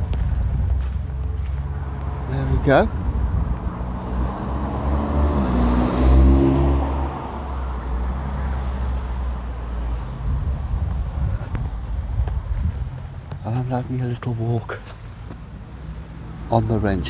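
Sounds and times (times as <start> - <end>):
car accelerating past: 1.4 - 11.5.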